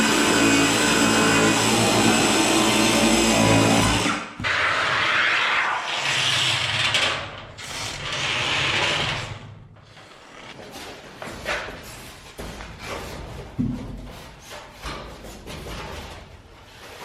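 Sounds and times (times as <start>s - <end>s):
table saw and shop vac running: 0.0s - 4.3s.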